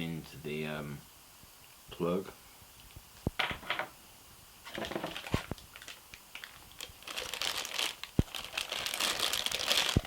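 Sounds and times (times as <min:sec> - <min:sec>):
packaging crinkling: 0:04.7 - 0:10.0.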